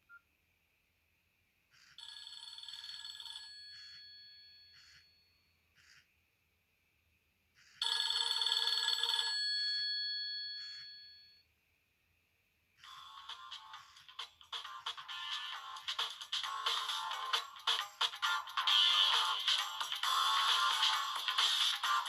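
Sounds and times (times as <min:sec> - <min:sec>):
bell-like phone ringtone: 0:07.8 - 0:11.4, 0:14.8 - 0:22.0.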